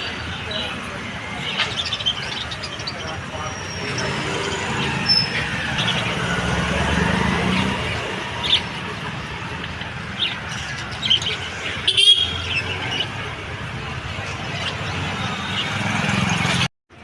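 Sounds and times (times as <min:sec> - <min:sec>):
parrots chirping and squawking: 0:07.2 - 0:13.3.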